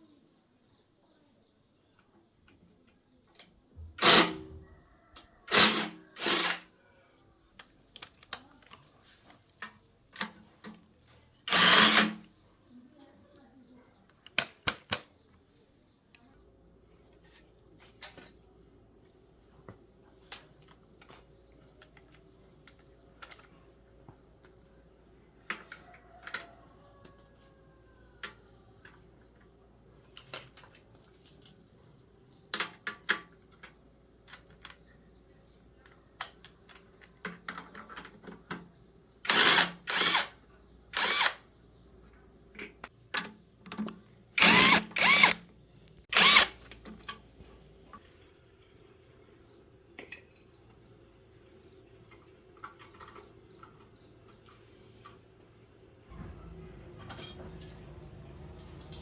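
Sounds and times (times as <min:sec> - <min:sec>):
metal tools clicking and knocking: 0:56.9 - 0:57.9, 0:58.5 - 0:59.0.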